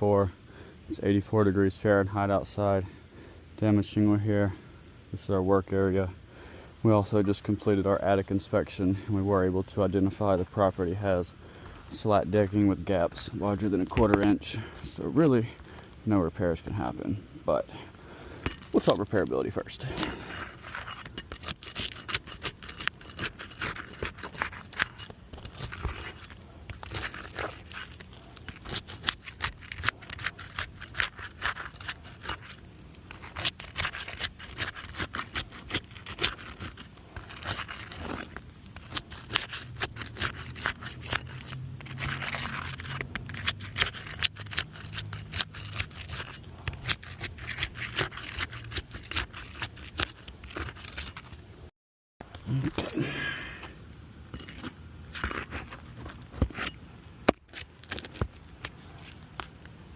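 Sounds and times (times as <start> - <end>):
shingles scraping and tearing: 11.6 - 15.8, 17.8 - 51.5, 54.3 - 59.6.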